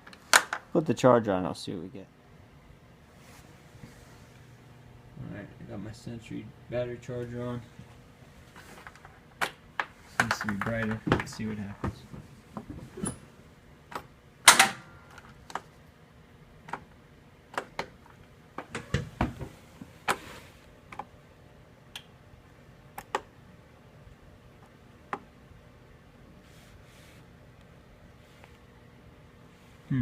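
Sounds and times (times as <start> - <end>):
clicks and knocks of hands working: 9.4 - 11.4, 23.0 - 23.3.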